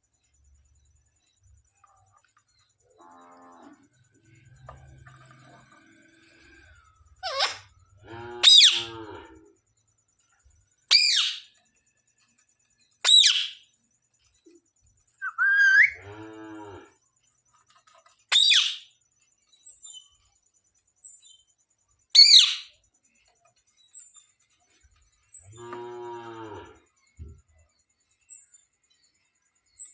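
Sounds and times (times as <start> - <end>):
parakeet screeching calls: 7.2 - 7.7, 8.4 - 8.9, 10.9 - 11.5, 13.0 - 13.6, 15.2 - 16.0, 18.3 - 18.9, 22.2 - 22.7.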